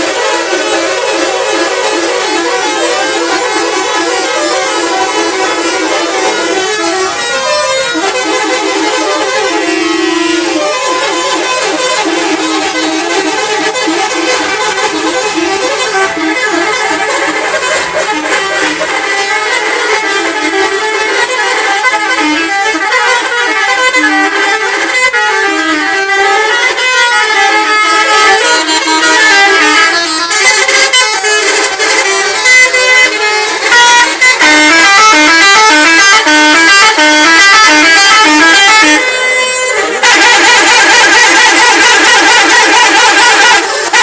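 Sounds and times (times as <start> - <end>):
bus musical air horns: 0.0 - 44.0.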